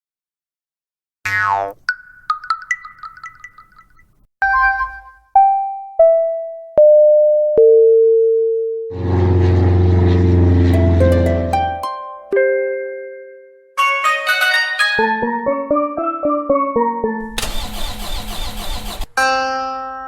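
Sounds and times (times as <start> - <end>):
high plinking notes: 1.9 - 4.1.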